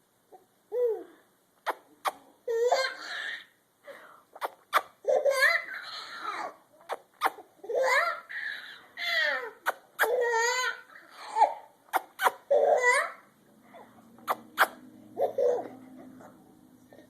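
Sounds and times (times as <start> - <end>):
baby giggling: 1.7 - 3.5, 4.4 - 13.3, 14.2 - 16.4.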